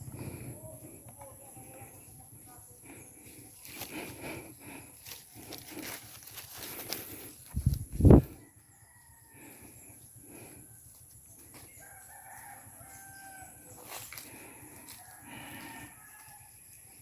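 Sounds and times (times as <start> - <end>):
distant rooster crowing: 8.3 - 9.8, 10.8 - 16.8.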